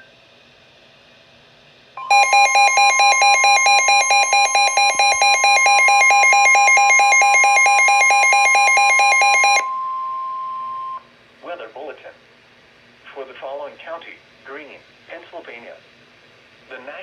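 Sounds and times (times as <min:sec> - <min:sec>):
steady alarm tone: 0:02.0 - 0:11.0
rapidly pulsing alert beep: 0:02.1 - 0:09.7.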